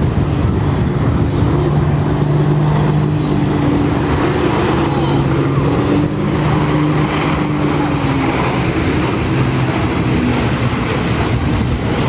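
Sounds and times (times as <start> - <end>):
watercraft engine running: 0.0 - 12.0.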